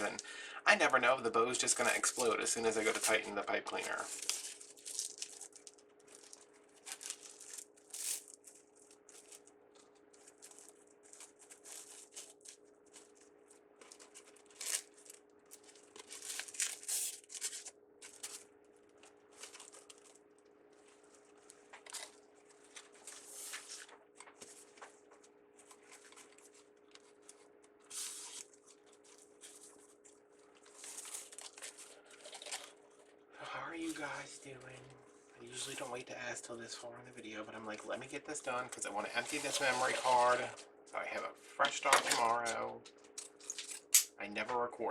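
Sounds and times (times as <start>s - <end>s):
faint steady hum: 0.0s - 44.9s
ribbon crinkling and rustling: 1.5s - 33.2s, 41.6s - 44.1s.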